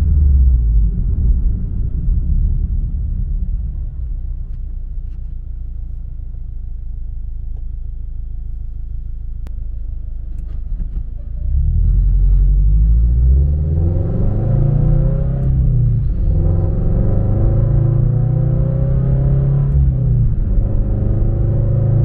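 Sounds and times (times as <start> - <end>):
car engine rumble accelerating: 0.0 - 22.0.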